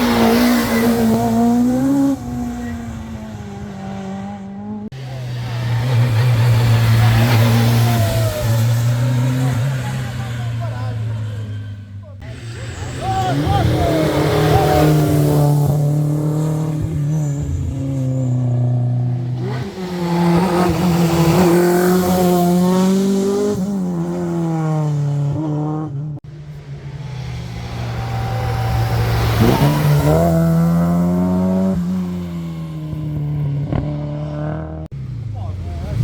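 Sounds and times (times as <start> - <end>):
rally car engines revving: 0.0 - 36.0.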